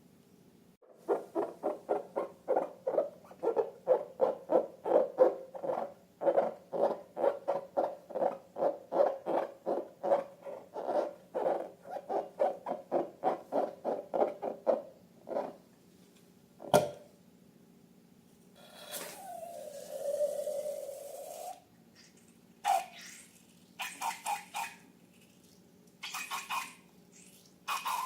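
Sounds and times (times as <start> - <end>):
balloons squeaking: 18.8 - 21.6.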